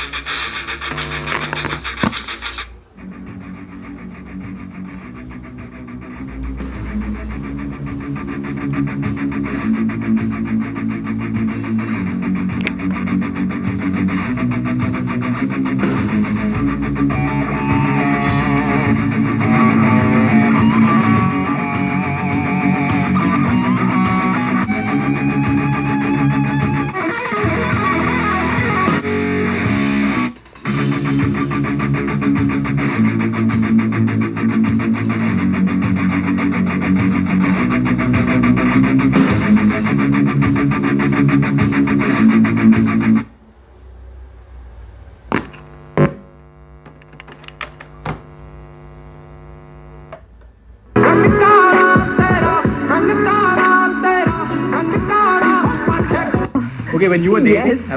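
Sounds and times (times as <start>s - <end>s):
rock music through a boombox: 0.0s - 43.4s, 50.9s - 57.9s.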